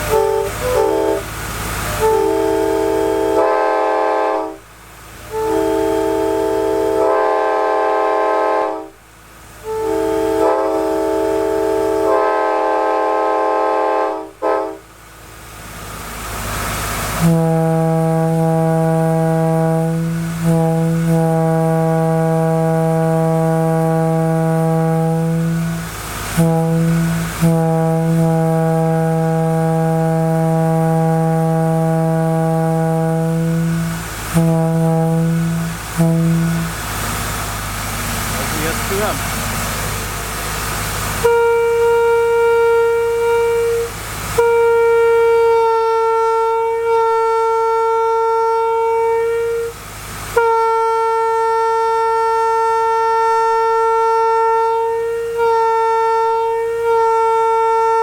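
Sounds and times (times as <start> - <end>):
deep locomotive horn blasts: 0.0 - 58.0
locomotive air horn chord blasts: 0.0 - 58.0.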